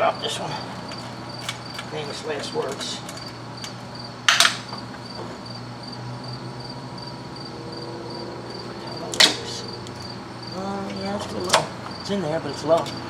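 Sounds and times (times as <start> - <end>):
tools clattering and scraping: 0.3 - 5.4, 8.6 - 10.2, 10.8 - 12.0, 12.6 - 13.0.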